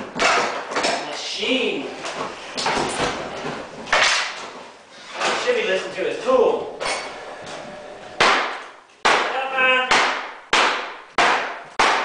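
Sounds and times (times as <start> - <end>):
heavy demolition impacts: 6.8 - 9.3.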